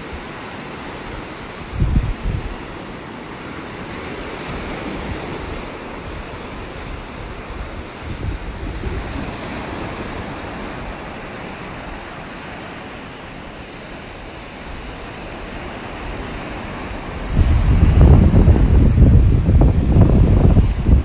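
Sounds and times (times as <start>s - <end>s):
ocean surf washing on beach: 0.0s - 21.0s
wind buffeting microphone: 1.4s - 2.9s, 4.4s - 12.1s, 14.2s - 21.0s.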